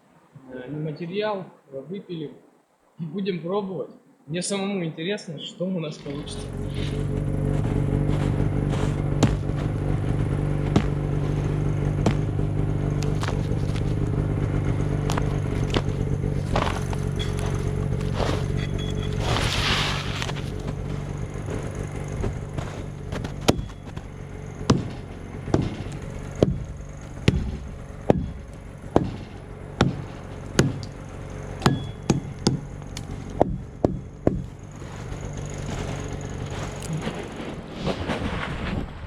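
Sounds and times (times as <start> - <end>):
steady low hum: 0.0 - 39.0
axe chopping wood: 8.3 - 14.2, 21.6 - 35.3.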